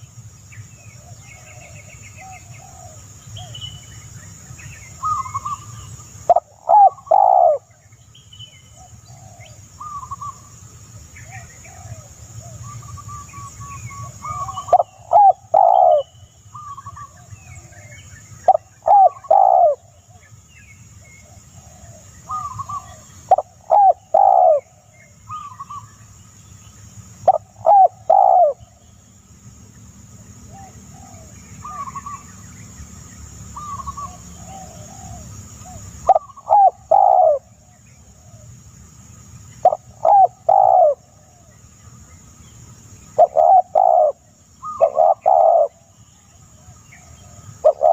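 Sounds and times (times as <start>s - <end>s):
bird calling low notes: 11.2s - 20.2s, 27.3s - 28.9s, 33.5s - 38.5s, 39.6s - 41.5s, 43.2s - 46.3s.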